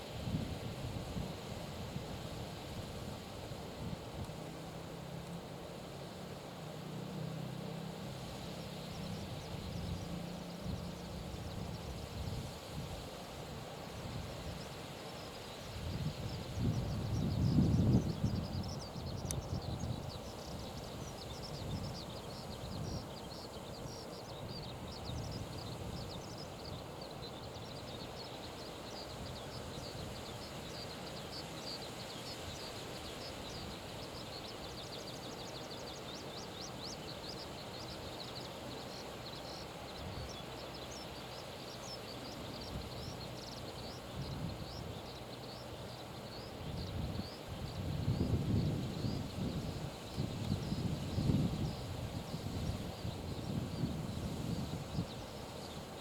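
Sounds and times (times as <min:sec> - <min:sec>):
small birds chirping: 0:08.3 - 0:56.0
wind gusting over microphone: 0:15.8 - 0:20.9, 0:46.6 - 0:55.9.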